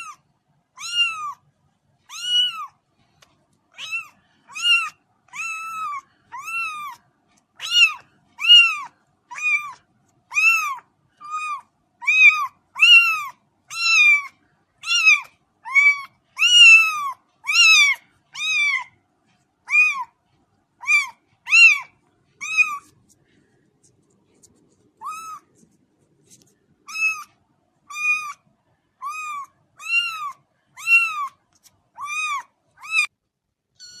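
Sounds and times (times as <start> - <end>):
kitten meowing: 0.0 - 0.2, 0.8 - 1.4, 2.1 - 2.8, 3.7 - 7.0, 7.6 - 18.9, 19.7 - 20.2, 20.8 - 23.0, 25.0 - 25.6, 26.8 - 28.4, 29.0 - 31.4, 32.0 - 33.1, 33.8 - 34.0.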